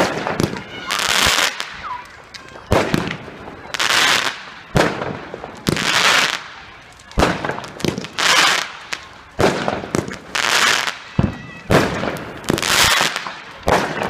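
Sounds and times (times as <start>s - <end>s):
fireworks bangs: 0.0s - 14.0s
fireworks hissing bursts: 0.0s - 14.0s.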